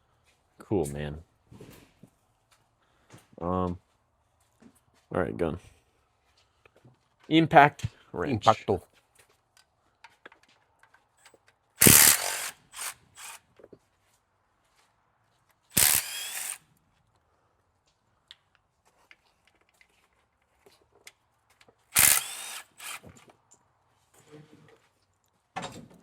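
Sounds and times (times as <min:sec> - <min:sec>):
impact wrench hammering: 0:11.8 - 0:13.3, 0:15.8 - 0:16.6, 0:22.0 - 0:23.1.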